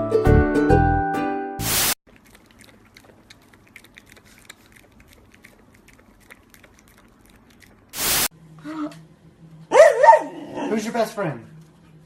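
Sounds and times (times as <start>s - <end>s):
music: 0.0s - 1.6s
loud hiss burst: 1.6s - 2.0s, 8.0s - 8.3s.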